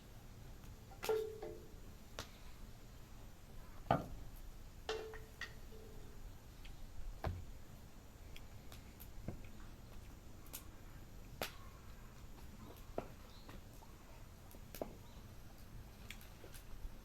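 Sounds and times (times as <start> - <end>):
low fire hiss: 0.0 - 17.0
campfire crackling and popping: 8.2 - 15.0.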